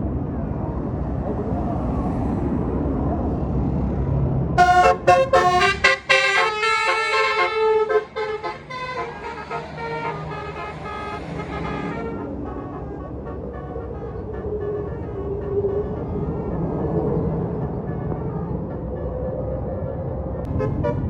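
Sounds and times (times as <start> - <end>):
bus engine rumbling: 0.0 - 21.0
bus musical horn playing notes: 4.6 - 16.7, 20.5 - 21.0.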